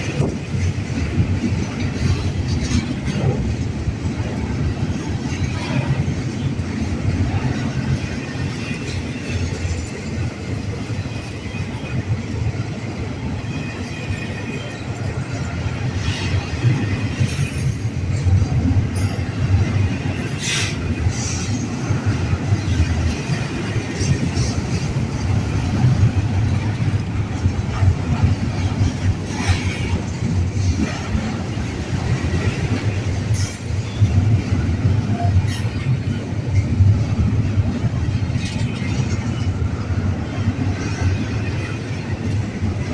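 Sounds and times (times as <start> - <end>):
freight train rumbling: 0.0 - 42.9.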